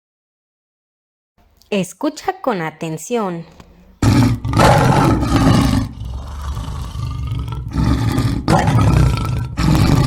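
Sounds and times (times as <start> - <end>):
lion roaring: 4.0 - 10.0.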